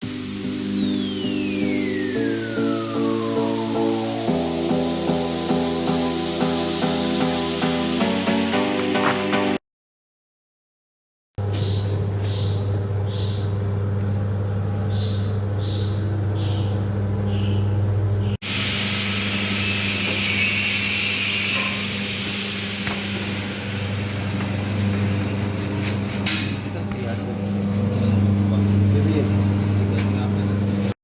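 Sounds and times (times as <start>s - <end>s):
even hiss: 0.0s - 7.3s
electric motor hum: 0.0s - 7.9s.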